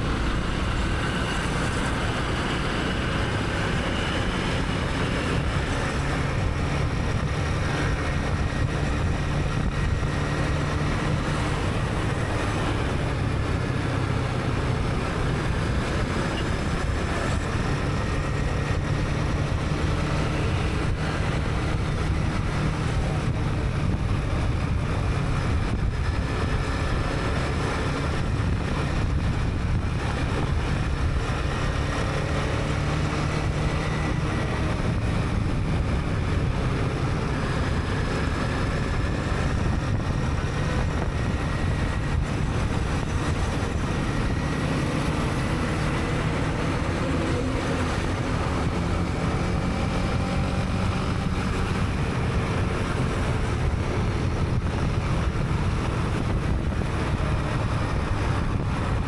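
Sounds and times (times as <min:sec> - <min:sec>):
wind and road noise: 0:00.0 - 0:59.0.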